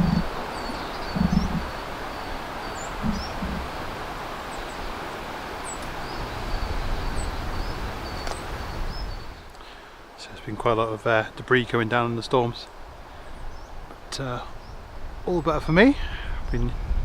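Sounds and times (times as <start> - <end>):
low thumps: 0.0 - 0.4, 1.1 - 1.7, 3.0 - 3.8
small birds chirping: 0.0 - 16.9
leaves rustling in wind: 0.0 - 17.0.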